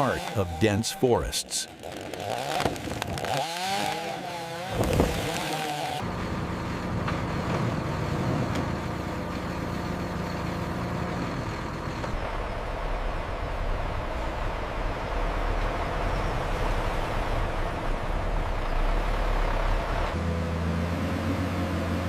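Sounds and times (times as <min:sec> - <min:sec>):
chainsaw revving: 0:00.0 - 0:00.8, 0:01.7 - 0:06.0
heavy engine running steadily: 0:06.0 - 0:22.0.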